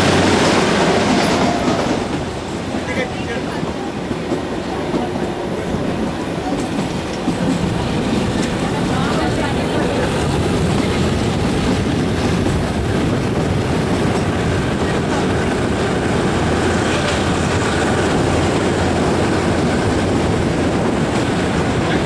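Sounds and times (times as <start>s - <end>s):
train wheels on track: 0.0s - 22.0s.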